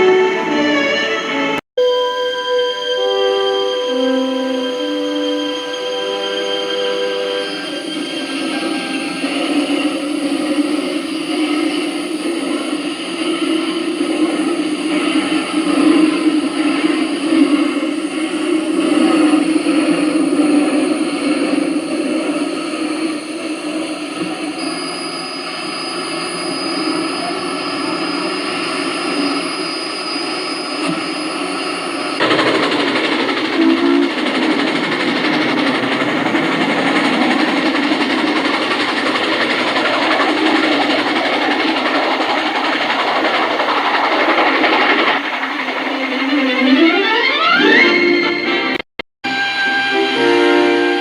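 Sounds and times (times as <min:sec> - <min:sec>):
model steam locomotive running: 0:03.0 - 0:47.7.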